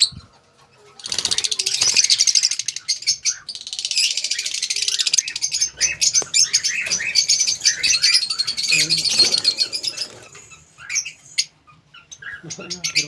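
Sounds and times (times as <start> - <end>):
lovebirds chirping: 0.0 - 13.0.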